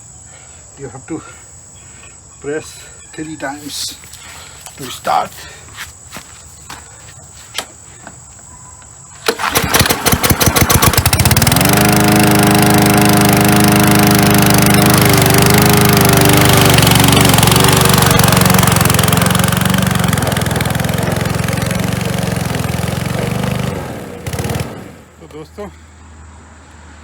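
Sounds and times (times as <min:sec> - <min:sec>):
lawn mower engine running: 0:09.2 - 0:25.4.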